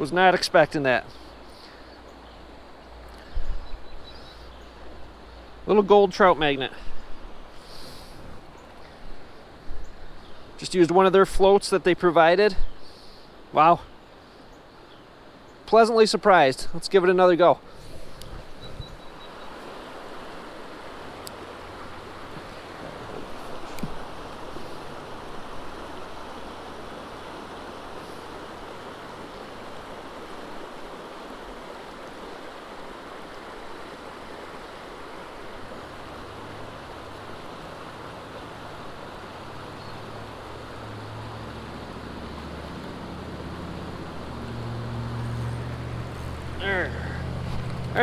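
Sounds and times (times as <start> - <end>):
stream water running over rocks: 0.0 - 48.0.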